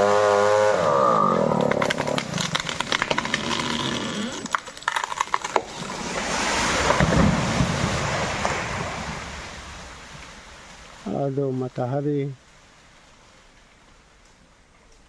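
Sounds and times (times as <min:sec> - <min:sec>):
tree crown falling through foliage: 0:00.1 - 0:11.1
wood cracking and snapping: 0:00.4 - 0:08.7.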